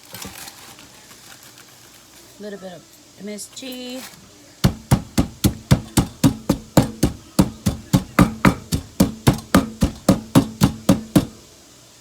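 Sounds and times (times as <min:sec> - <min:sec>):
pestle pounding in mortar: 0:04.6 - 0:11.4.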